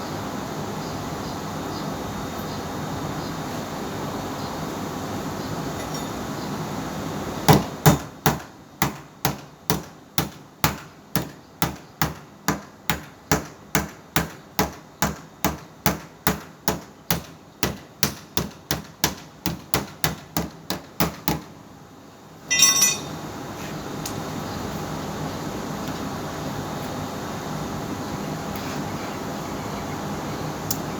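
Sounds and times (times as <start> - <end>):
ringing metallic clatter: 22.5 - 23.2.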